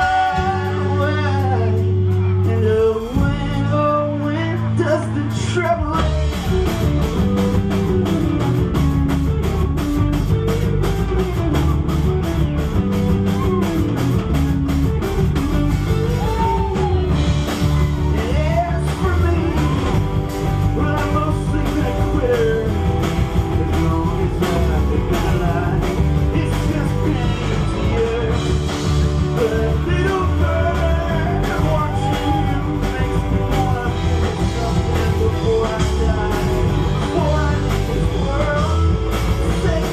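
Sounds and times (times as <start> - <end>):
person singing: 0.0 - 7.2, 15.8 - 39.9
bass: 0.0 - 39.9
guitar: 0.0 - 39.9
drum beat: 5.8 - 39.9.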